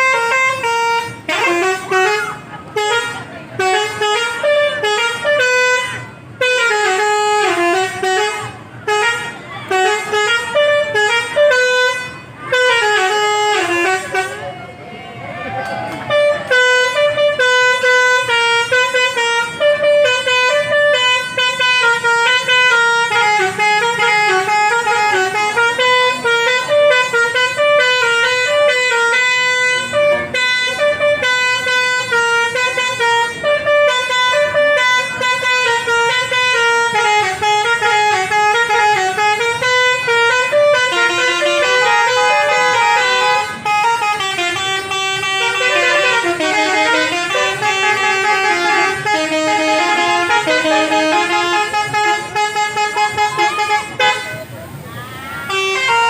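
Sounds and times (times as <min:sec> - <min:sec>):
musical bus horn melody: 0:00.0 - 0:14.8, 0:15.6 - 0:56.0.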